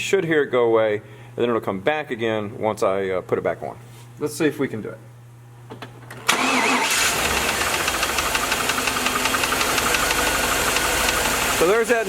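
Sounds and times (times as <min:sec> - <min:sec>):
engine cranking on starter: 0:06.1 - 0:12.0
engine idling with knock: 0:07.2 - 0:11.6.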